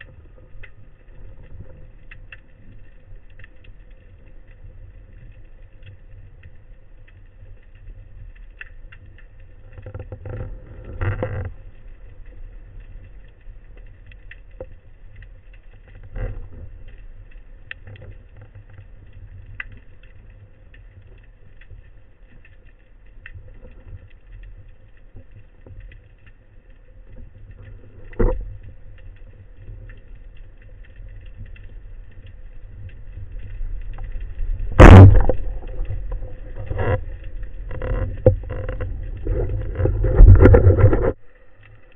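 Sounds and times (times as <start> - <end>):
faint clicks: 0.0 - 41.9
low underwater rumble: 0.0 - 41.9
louder knocks: 34.8 - 35.3.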